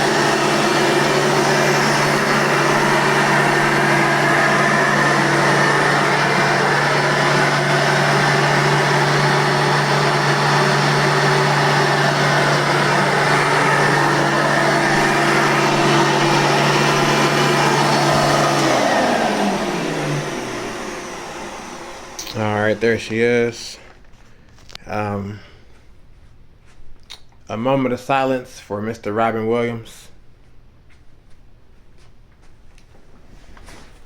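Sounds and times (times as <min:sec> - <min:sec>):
vacuum cleaner running: 0:00.0 - 0:24.0.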